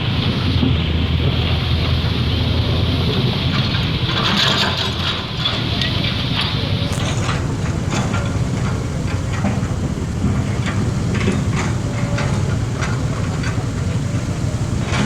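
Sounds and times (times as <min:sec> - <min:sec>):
heavy engine rumbling: 0:00.0 - 0:15.0
metal clanks and knocks: 0:03.1 - 0:15.0.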